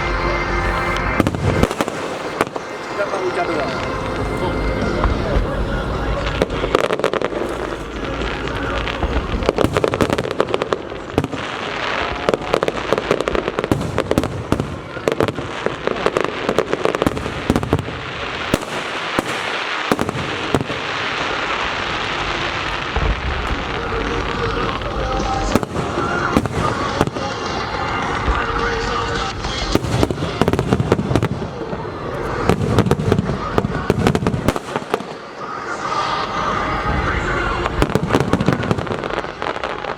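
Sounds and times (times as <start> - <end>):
faint crowd voices: 0.0 - 39.9
fireworks crackling bangs: 0.0 - 39.9.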